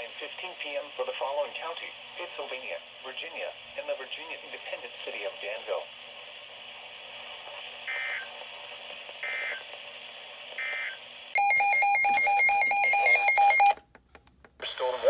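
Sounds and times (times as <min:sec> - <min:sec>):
radio hiss: 0:00.0 - 0:11.3, 0:14.6 - 0:15.0.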